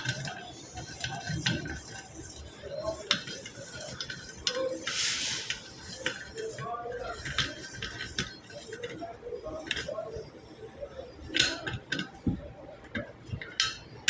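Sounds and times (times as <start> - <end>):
brief hiss: 4.9 - 5.6.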